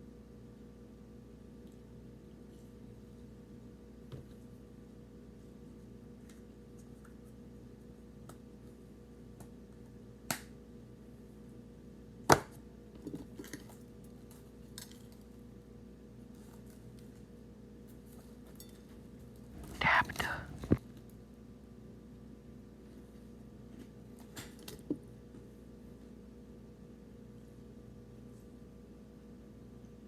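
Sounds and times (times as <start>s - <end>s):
steady low hum: 19.6s - 20.8s.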